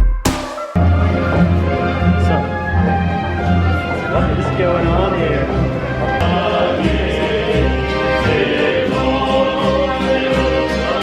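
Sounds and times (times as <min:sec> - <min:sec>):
crash-like hit: 0:00.0 - 0:00.9
electronic beat music: 0:00.0 - 0:01.0.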